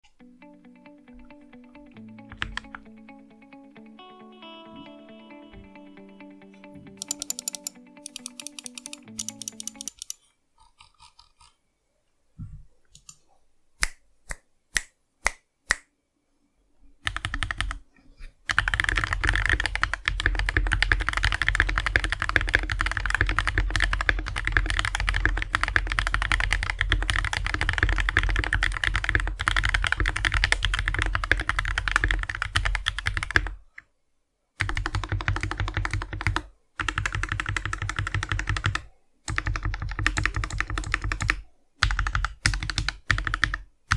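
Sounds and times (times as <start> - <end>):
typing on mechanical keyboard: 7.0 - 11.5, 17.0 - 17.8, 18.5 - 33.5, 34.6 - 43.6.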